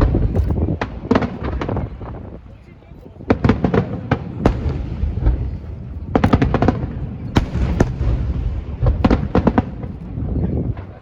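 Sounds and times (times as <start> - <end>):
fireworks bangs and crackles: 0.0 - 11.0
low rolling rumble: 3.9 - 11.0.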